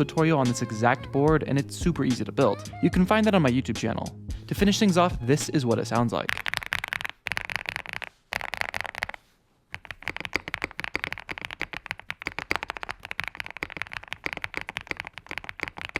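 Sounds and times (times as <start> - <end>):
mechanical keyboard typing: 6.0 - 15.9.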